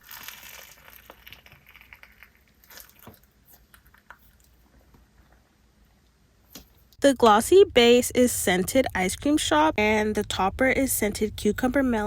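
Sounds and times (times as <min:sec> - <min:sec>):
slime squishing: 0:00.0 - 0:04.7.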